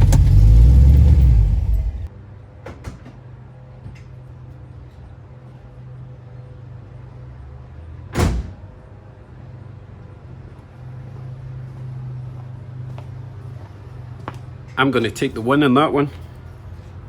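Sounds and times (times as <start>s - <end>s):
car engine droning: 0.0s - 2.1s.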